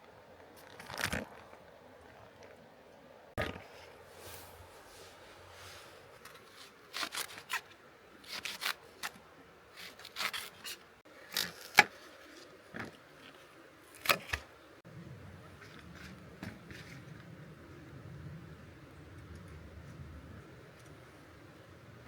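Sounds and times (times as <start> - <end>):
short scrapes and rustles: 3.6 - 7.7.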